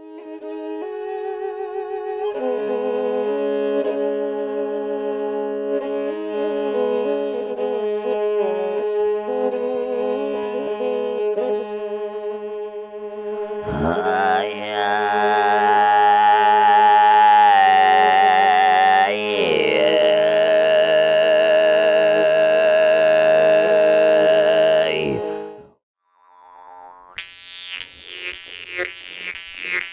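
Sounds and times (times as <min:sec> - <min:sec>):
bowed string melody: 0:00.0 - 0:16.8, 0:17.5 - 0:25.8
throat singing: 0:13.4 - 0:25.6.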